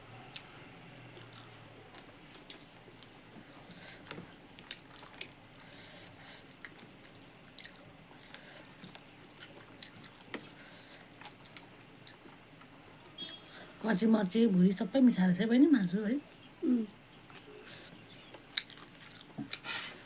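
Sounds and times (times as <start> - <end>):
person chewing food: 1.1 - 12.7, 16.8 - 19.8.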